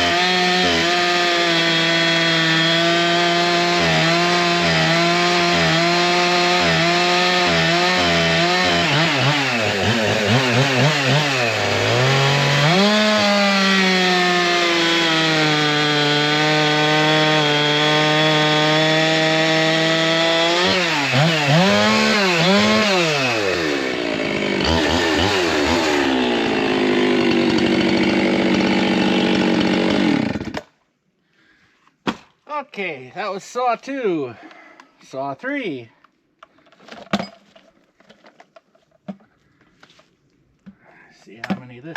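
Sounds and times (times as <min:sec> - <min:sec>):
chainsaw cutting wood: 0:00.0 - 0:30.8.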